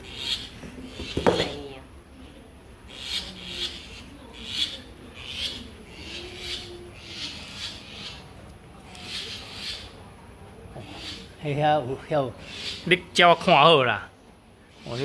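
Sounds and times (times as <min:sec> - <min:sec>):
fledgling bird raspy hissing calls: 0:00.0 - 0:01.0, 0:02.9 - 0:08.3, 0:09.0 - 0:10.0, 0:10.8 - 0:11.4, 0:12.4 - 0:13.0.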